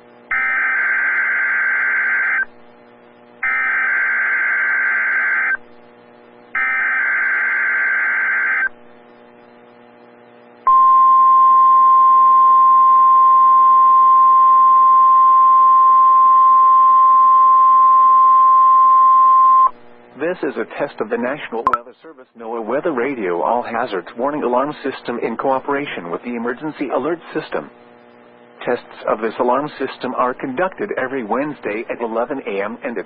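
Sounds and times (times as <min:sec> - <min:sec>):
buzzy data tone bursts: 0:00.0 - 0:20.4
steady warning alarm tone: 0:00.3 - 0:02.6, 0:03.4 - 0:05.6, 0:06.5 - 0:08.7.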